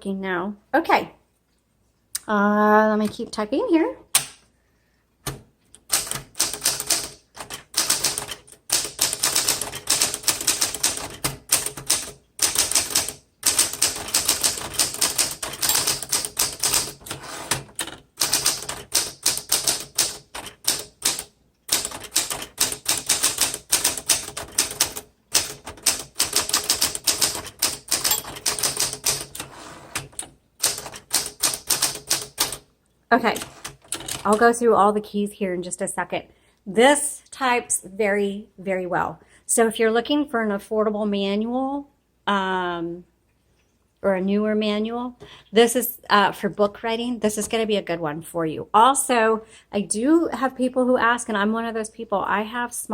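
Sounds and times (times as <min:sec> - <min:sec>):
manual typewriter keystrikes: 0:05.2 - 0:32.7, 0:33.3 - 0:34.4.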